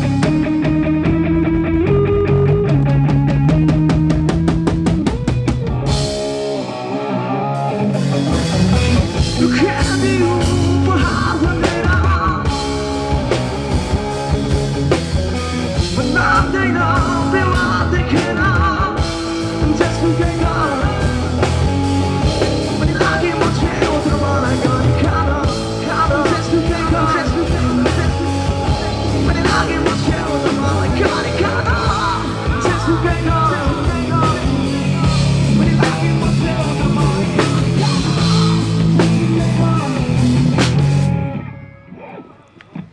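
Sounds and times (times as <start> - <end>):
drum kit: 0.0 - 41.2
bass guitar: 0.0 - 42.9
electric guitar: 0.0 - 42.9
person singing: 9.2 - 12.8, 15.9 - 40.4.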